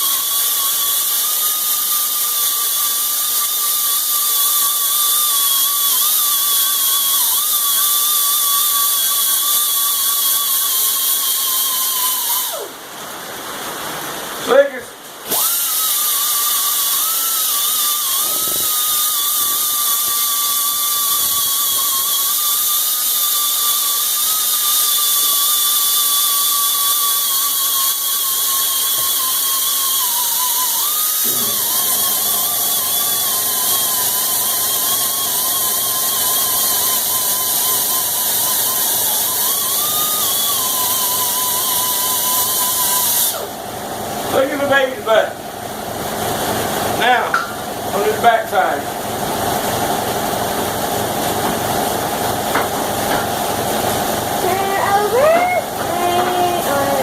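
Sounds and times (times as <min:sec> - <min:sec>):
air grinder whining: 0:00.0 - 0:12.8, 0:15.2 - 0:57.0
air hiss: 0:15.2 - 0:43.5.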